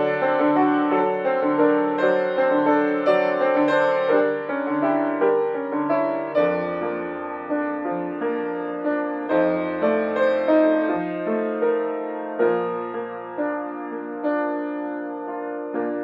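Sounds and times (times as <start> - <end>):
solo piano: 0.0 - 16.0.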